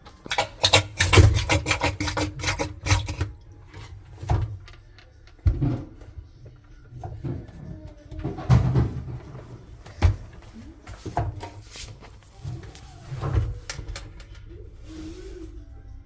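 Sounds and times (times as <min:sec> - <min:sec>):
knocks and clatter: 0:06.9 - 0:10.3.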